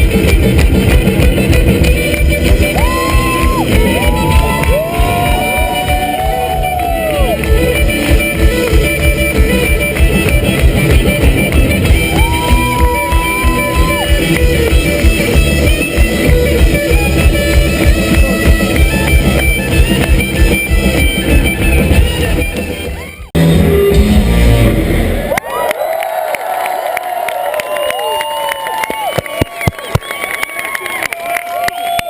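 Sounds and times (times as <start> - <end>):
rock music with guitar and drums: 0.0 - 25.0.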